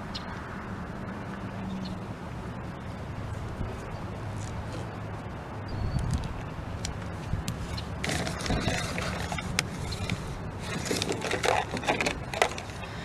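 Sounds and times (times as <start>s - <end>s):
small metal parts clicking and scraping: 7.5s - 12.9s.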